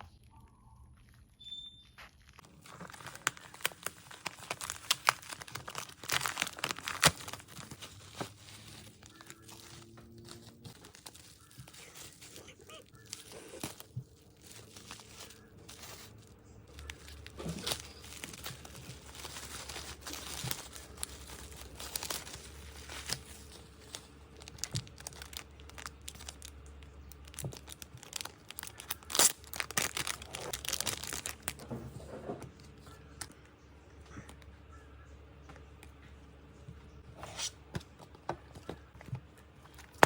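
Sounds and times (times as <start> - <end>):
packaging being torn and crinkled: 2.2 - 31.6, 39.7 - 40.0.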